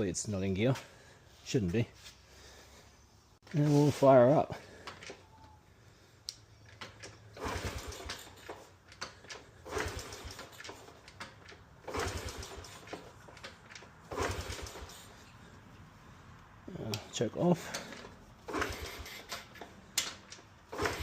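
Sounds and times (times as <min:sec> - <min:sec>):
motorcycle engine kick-starting: 0:06.6 - 0:15.3, 0:17.5 - 0:21.0.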